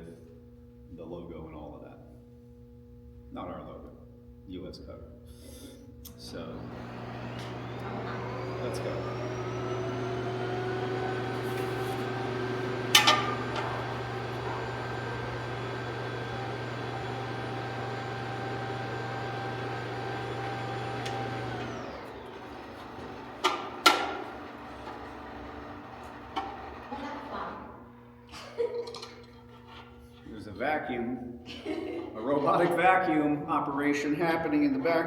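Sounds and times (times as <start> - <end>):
robotic vacuum motor whirring: 6.4 - 25.7.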